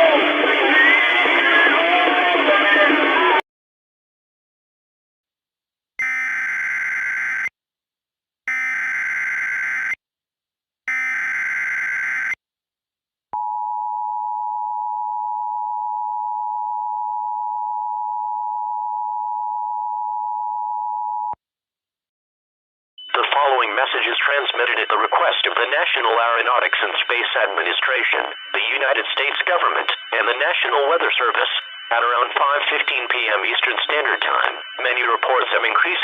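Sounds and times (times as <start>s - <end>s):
harsh digital data tones: 23.0s - 36.0s.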